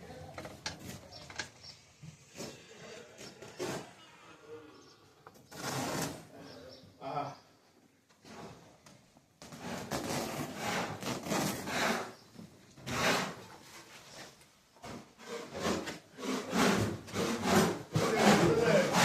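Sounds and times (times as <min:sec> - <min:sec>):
rough scraping on wood: 0:02.2 - 0:06.6, 0:08.2 - 0:08.7, 0:09.4 - 0:19.0.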